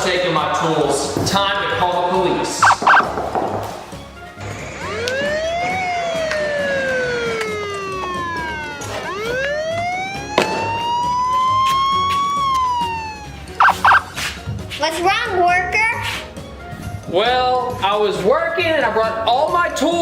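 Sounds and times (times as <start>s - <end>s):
police siren wailing: 2.6s - 3.1s, 4.4s - 14.2s.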